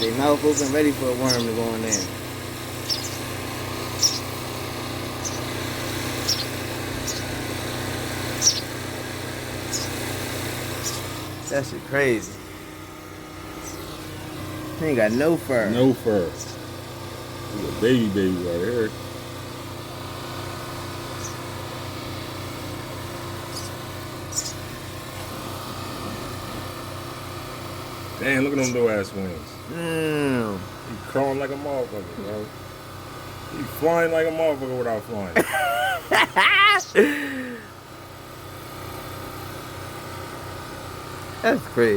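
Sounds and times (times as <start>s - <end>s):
nestling birds begging chirps: 0.0s - 29.7s, 36.2s - 37.1s
steady motor hum: 0.0s - 41.9s.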